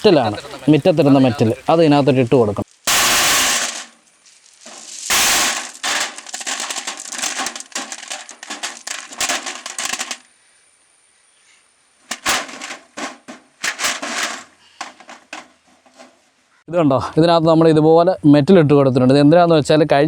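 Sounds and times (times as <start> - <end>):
stones rattling in metal tin: 2.7 - 10.2, 12.1 - 15.6.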